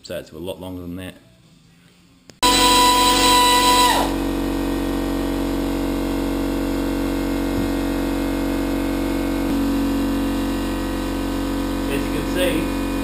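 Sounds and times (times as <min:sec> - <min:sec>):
high whine dropping in pitch: 0:02.4 - 0:13.0
steady mechanical drone: 0:02.4 - 0:13.0.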